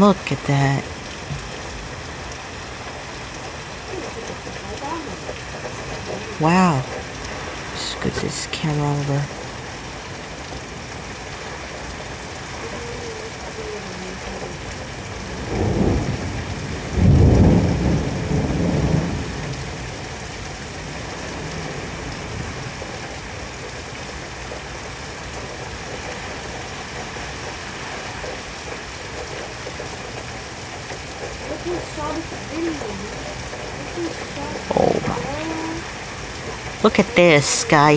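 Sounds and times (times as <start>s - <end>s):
heavy rain: 0.0s - 37.9s
thunder rumbling: 9.2s - 24.0s, 28.2s - 37.7s.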